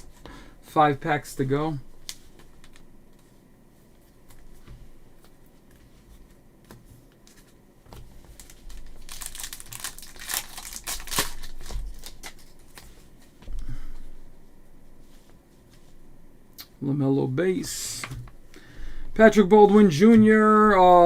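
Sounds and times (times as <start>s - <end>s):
wrapper tearing and crinkling: 8.4s - 12.8s.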